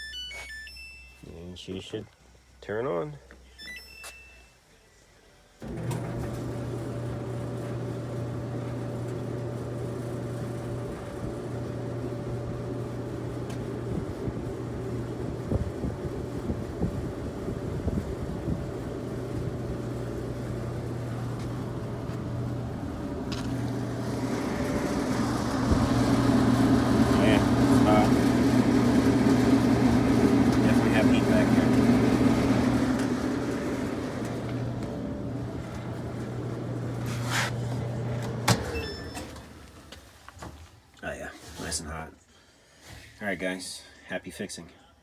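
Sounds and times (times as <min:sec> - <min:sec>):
electric dryer motor humming: 0:05.6 - 0:40.3
dryer drum turning: 0:05.6 - 0:40.7.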